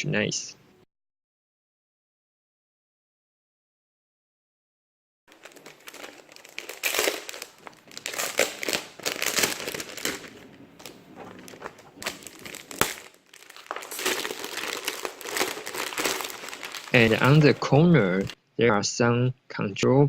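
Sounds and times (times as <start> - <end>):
plastic packaging crinkling: 5.3 - 18.4.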